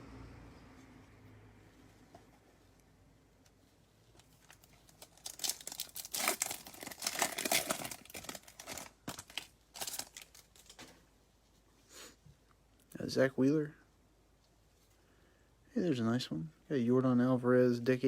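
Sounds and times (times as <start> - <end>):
foil wrapper tearing and crinkling: 4.4 - 10.8.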